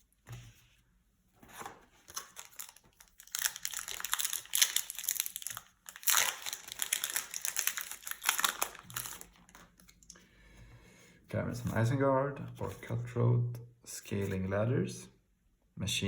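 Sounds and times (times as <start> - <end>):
plastic wrapper crackling: 2.0 - 10.2.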